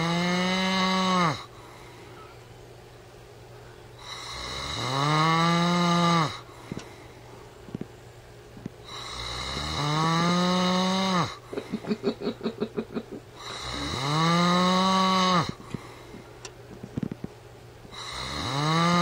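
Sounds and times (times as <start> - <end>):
man snoring loudly: 0.0 - 1.5, 4.0 - 6.5, 8.8 - 11.4, 13.4 - 15.6, 17.9 - 19.0
fluttering snore rattle: 8.9 - 11.4, 13.4 - 15.7, 18.0 - 19.0.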